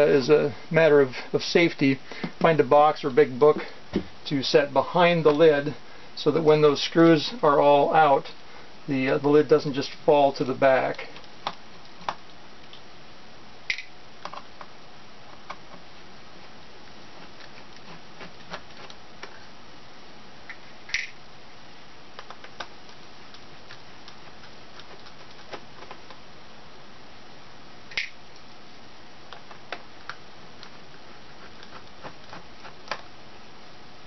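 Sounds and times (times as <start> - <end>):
steady hiss: 0.0 - 34.0.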